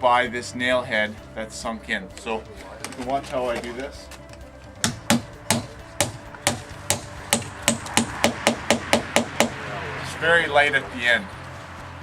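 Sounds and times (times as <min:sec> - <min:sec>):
hammer striking nail: 0:04.8 - 0:09.6.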